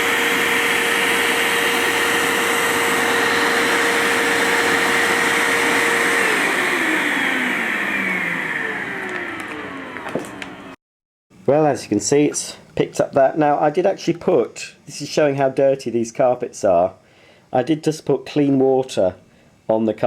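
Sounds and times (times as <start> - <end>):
vacuum cleaner motor running: 0.0 - 10.8.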